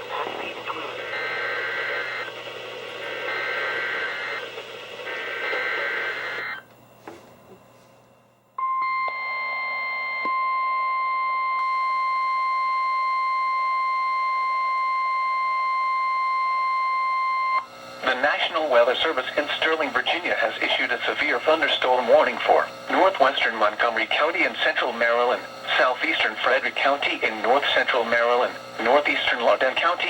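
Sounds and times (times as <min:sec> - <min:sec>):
steady single-pitch alarm tone: 0:08.6 - 0:17.9.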